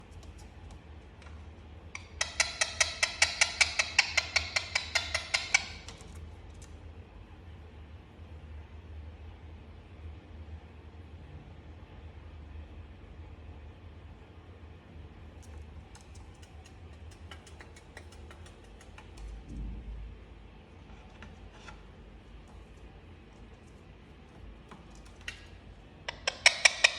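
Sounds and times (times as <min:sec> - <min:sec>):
parrot clicking: 0:00.1 - 0:06.8, 0:15.4 - 0:19.5, 0:24.6 - 0:26.9
parrot making kissing smacks: 0:16.0 - 0:19.4.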